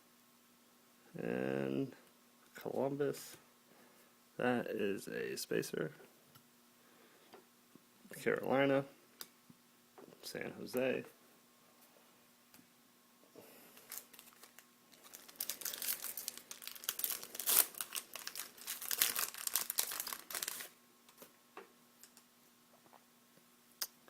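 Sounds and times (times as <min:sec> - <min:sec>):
plastic wrapper crinkling: 0:13.7 - 0:21.3.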